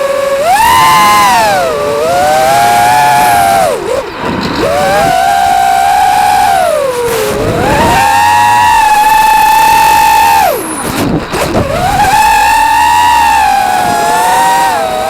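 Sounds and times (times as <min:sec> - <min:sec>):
quadcopter motors whining: 0:00.0 - 0:15.0.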